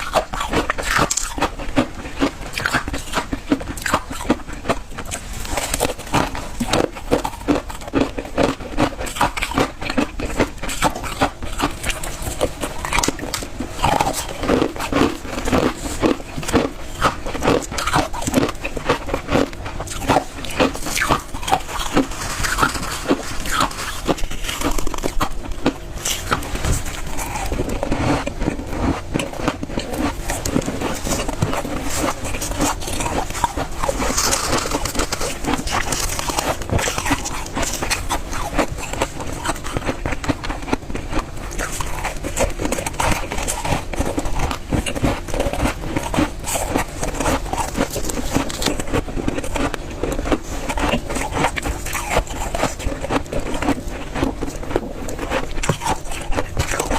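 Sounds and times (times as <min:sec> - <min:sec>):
crunching and chewing ice: 0:00.0 - 0:56.9.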